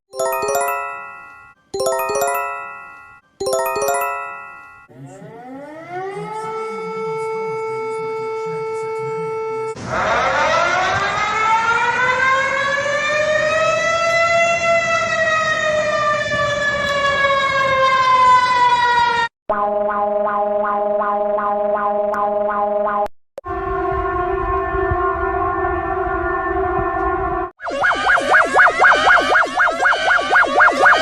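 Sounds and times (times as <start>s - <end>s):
alert tones chord: 0.1s - 5.0s, 27.6s - 31.0s
siren wail rising and falling: 0.1s - 22.0s, 23.5s - 31.0s
warning siren winding up: 0.2s - 12.4s, 27.0s - 31.0s.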